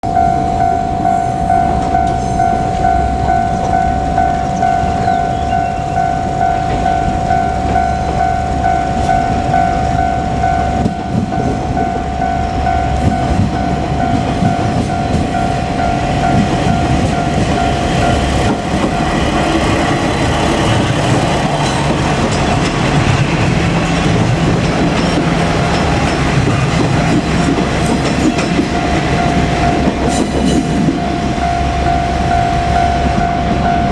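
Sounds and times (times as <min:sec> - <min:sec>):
level crossing bell dinging: 0:00.0 - 0:19.0
diesel railcar engine: 0:00.0 - 0:33.9
train wheel clatter: 0:01.5 - 0:33.9.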